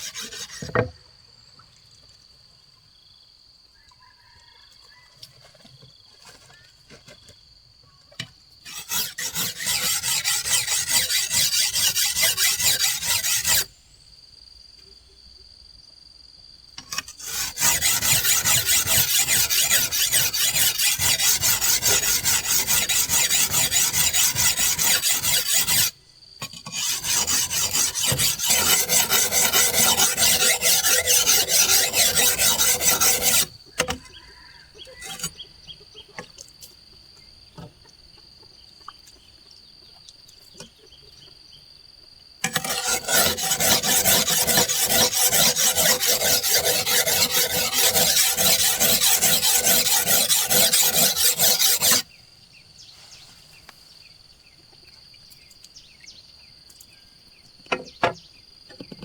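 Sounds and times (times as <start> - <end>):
rasping on wood: 0.0 - 0.8, 8.7 - 13.7, 16.9 - 34.0, 35.0 - 35.3, 42.4 - 52.1.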